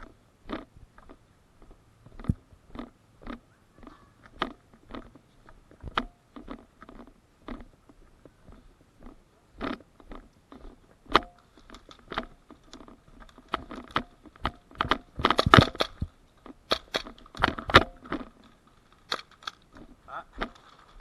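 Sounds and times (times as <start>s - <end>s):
airsoft gun cracks and clicks: 11.1s - 21.0s.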